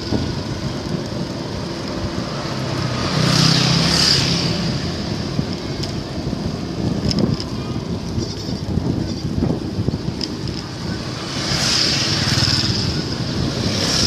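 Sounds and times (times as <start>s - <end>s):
road and wind noise: 0.0s - 14.0s
vehicle passing by: 2.2s - 5.2s.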